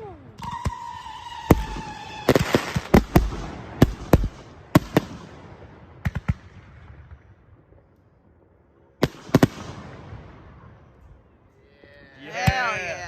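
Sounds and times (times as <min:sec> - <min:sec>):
whistling firework shrieking: 0:00.0 - 0:02.9
firework bangs: 0:00.0 - 0:07.8, 0:09.0 - 0:10.9.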